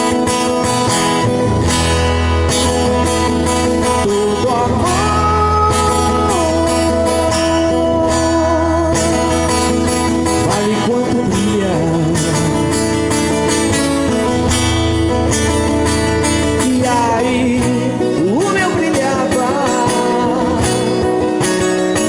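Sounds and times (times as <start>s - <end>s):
acoustic guitar strumming: 0.0s - 22.0s
person singing with vibrato: 3.5s - 14.1s, 15.8s - 22.0s.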